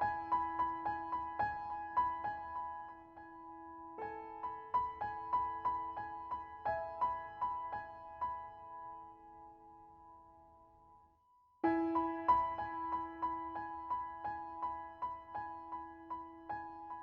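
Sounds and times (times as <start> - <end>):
gentle piano-like melody: 0.0 - 17.0.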